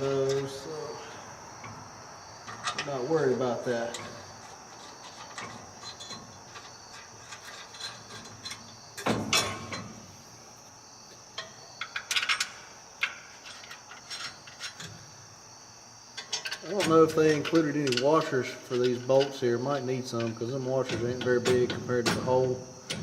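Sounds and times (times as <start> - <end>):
metal clinks and knocks: 3.8 - 10.0, 11.4 - 15.0, 16.2 - 23.0.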